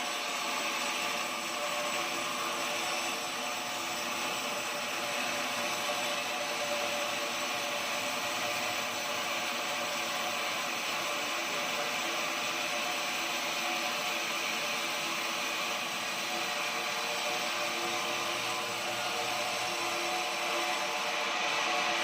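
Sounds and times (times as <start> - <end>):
sawmill sawing a log: 0.0 - 22.0.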